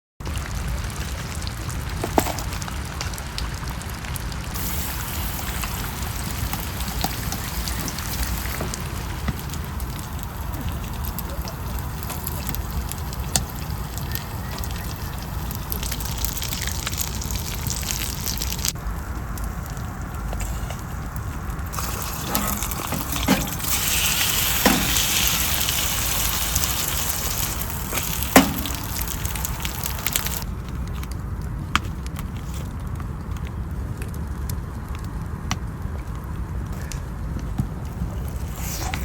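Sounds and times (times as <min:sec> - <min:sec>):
batter sizzling in hot oil: 0:00.2 - 0:18.8, 0:21.2 - 0:30.4.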